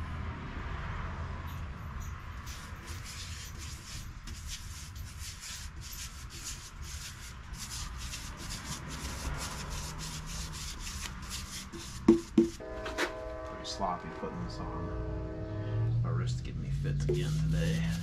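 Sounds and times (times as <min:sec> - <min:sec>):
applicator rubbing on wood: 0:02.5 - 0:12.6, 0:17.0 - 0:18.0.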